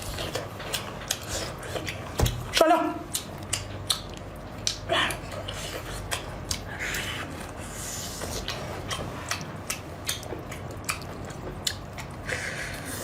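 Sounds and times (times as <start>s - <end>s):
food being chewed: 0.0s - 13.0s
wet smacking noises: 8.3s - 12.2s.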